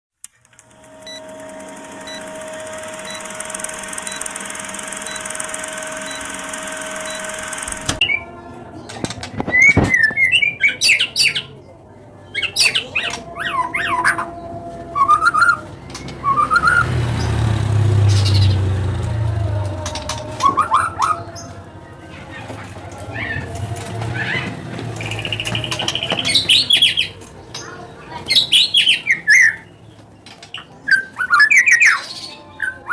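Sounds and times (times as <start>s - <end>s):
small regular beeps: 0.2s - 8.2s.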